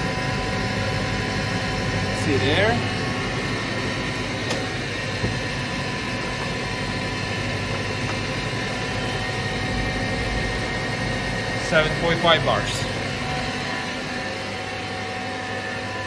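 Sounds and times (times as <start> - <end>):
air compressor running: 0.0 - 16.0.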